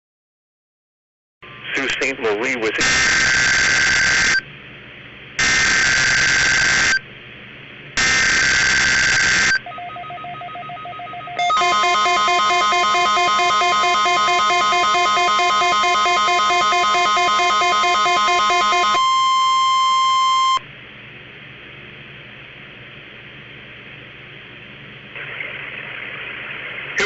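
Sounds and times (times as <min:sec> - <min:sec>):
screeching digital data bursts: 0:02.8 - 0:04.4, 0:05.4 - 0:07.0, 0:11.4 - 0:20.6
steady warning alarm tone: 0:02.9 - 0:04.5, 0:05.4 - 0:07.0, 0:08.0 - 0:20.6.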